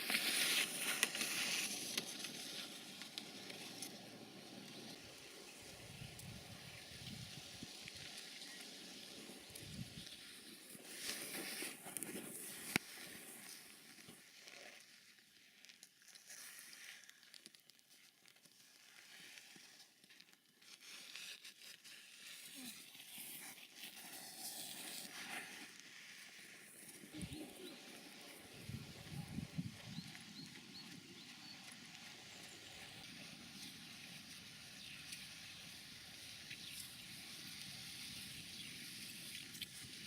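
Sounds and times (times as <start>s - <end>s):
footsteps crunching in snow: 0.0s - 3.0s, 6.8s - 14.2s.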